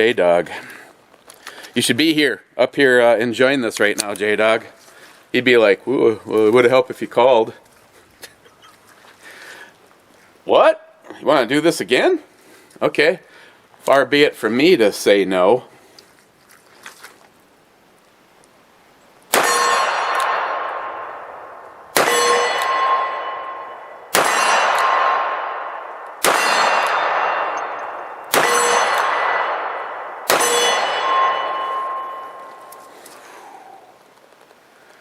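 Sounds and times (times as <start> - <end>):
steel target clanging: 19.4 - 32.9.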